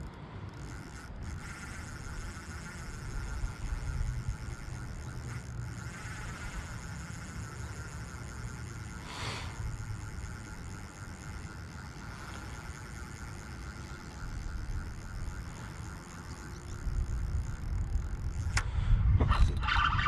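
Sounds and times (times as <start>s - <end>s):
wind rumble on microphone: 14.0s - 20.0s.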